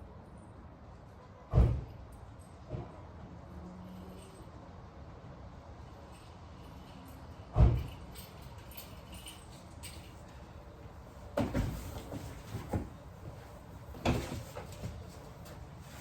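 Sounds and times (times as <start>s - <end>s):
tools knocking and clattering: 14.0s - 15.6s.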